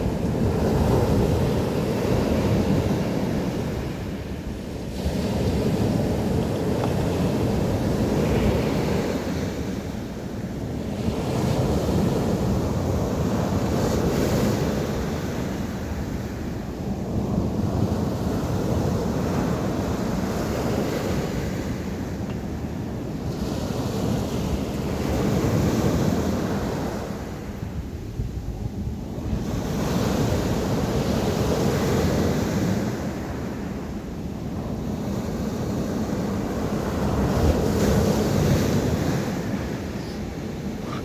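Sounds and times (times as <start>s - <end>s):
sea waves breaking on shore: 34.4s - 41.0s.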